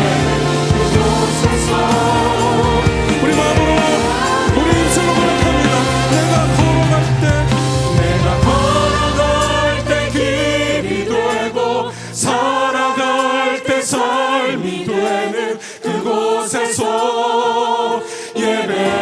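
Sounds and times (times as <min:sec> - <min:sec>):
low bass accompaniment: 0:00.0 - 0:12.6
voices singing worship song: 0:00.0 - 0:19.0.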